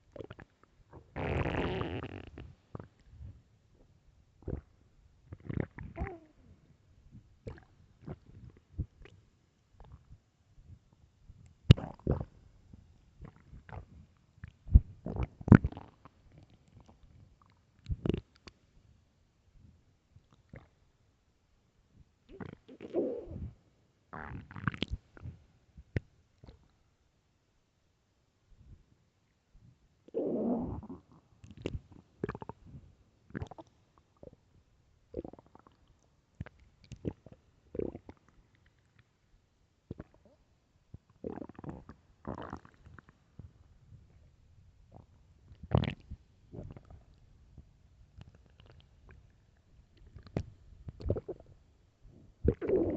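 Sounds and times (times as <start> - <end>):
stomach growling: 0.1 - 3.4, 4.4 - 6.5, 7.4 - 9.2, 11.7 - 12.4, 13.2 - 18.5, 20.3 - 20.8, 22.3 - 23.6, 24.2 - 26.7, 30.1 - 34.4, 35.1 - 39.0, 39.9 - 40.4, 41.0 - 44.3, 44.9 - 51.6, 52.2 - 52.9.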